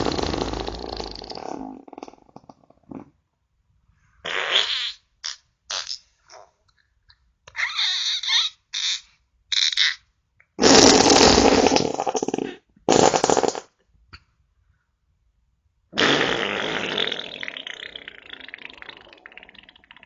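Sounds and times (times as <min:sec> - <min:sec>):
farts: 0:00.0 - 0:03.2, 0:04.2 - 0:06.5, 0:10.6 - 0:13.8, 0:16.0 - 0:20.0.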